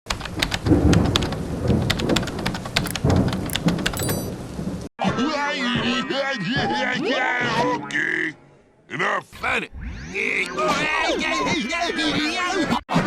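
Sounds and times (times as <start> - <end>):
rain-like crackling with clicks: 0.1 - 4.9.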